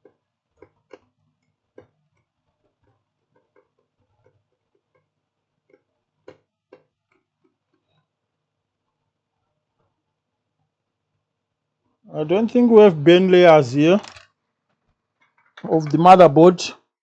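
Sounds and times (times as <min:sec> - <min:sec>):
small clicks and taps of tools: 0:00.0 - 0:08.1.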